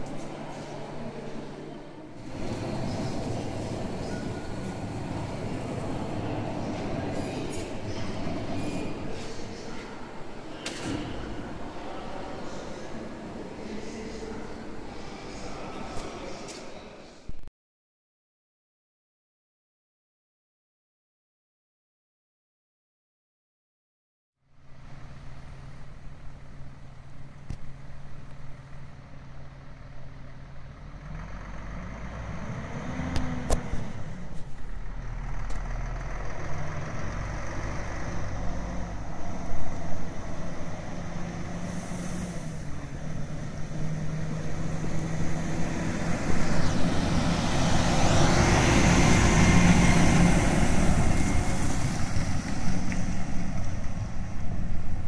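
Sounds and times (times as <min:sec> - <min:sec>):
diesel truck engine running: 0:00.0 - 0:10.6, 0:24.8 - 0:55.0.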